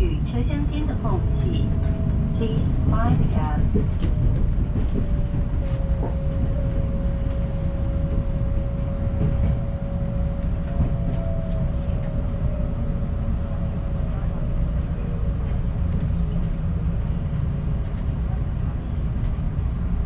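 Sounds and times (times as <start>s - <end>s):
steady whine: 0.0s - 15.6s
train interior rumble: 0.0s - 20.0s.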